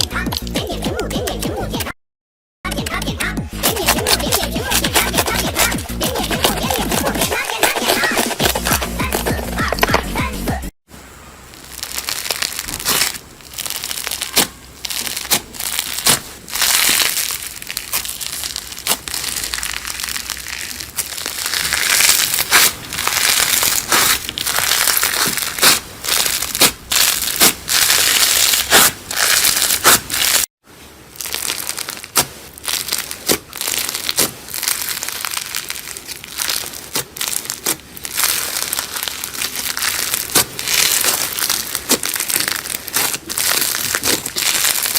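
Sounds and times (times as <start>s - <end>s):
slime squished by hand: 11.5s - 44.9s.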